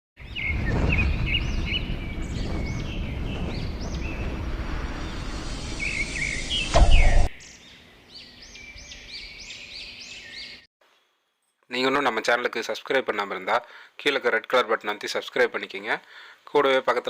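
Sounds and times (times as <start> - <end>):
birds chirping: 0.2 - 10.7
heavy low rushing whoosh: 0.5 - 7.4.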